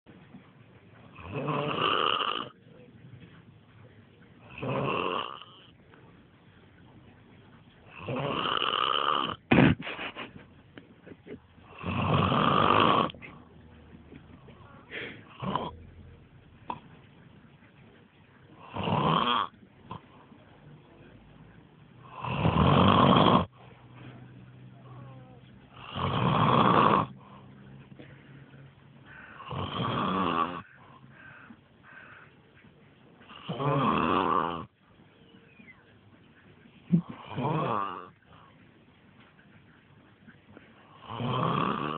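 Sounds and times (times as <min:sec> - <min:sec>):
man snoring: 0:01.1 - 0:02.5, 0:04.5 - 0:05.7, 0:07.9 - 0:09.4, 0:11.7 - 0:13.2, 0:15.3 - 0:15.8, 0:18.6 - 0:19.5, 0:22.1 - 0:23.5, 0:25.8 - 0:27.2, 0:29.4 - 0:30.6, 0:33.3 - 0:34.7, 0:37.0 - 0:38.1, 0:40.9 - 0:41.9
quiet breathing: 0:12.7 - 0:18.8, 0:23.5 - 0:26.2, 0:27.0 - 0:29.5.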